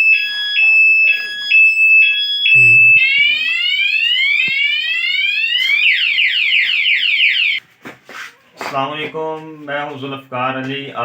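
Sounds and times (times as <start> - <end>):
motorcycle alarm siren: 0.0 - 7.6.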